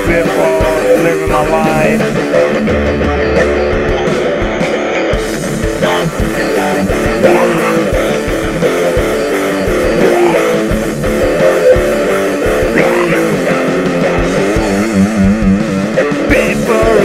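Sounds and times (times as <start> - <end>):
rock music with electric guitar: 0.0 - 17.0.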